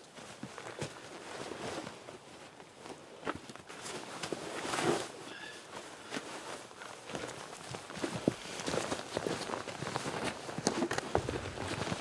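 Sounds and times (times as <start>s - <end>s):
crunching footsteps outdoors: 6.0s - 12.0s.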